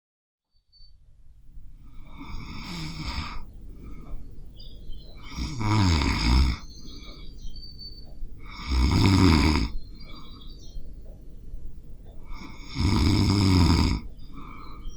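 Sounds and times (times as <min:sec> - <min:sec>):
quiet breathing: 0:01.2 - 0:14.9
person snoring: 0:01.9 - 0:03.5, 0:05.2 - 0:06.7, 0:08.4 - 0:09.8, 0:12.2 - 0:14.8.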